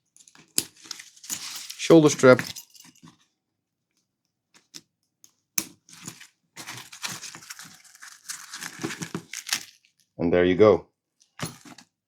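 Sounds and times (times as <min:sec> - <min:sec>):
fabric bag rustling: 0:05.9 - 0:09.9.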